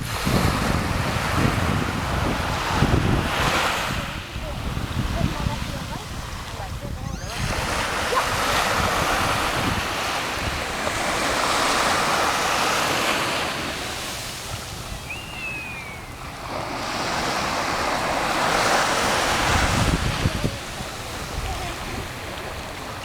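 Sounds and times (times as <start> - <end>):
sea waves washing onto beach: 0.0 - 23.0
wind buffeting microphone: 0.0 - 23.0
high falling whistle: 15.0 - 16.2.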